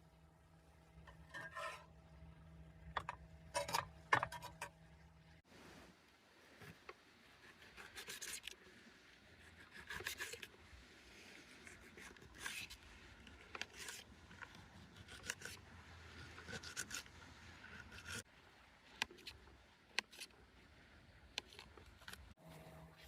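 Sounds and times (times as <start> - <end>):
utensil scraping cookware: 1.1 - 1.9, 3.0 - 4.7.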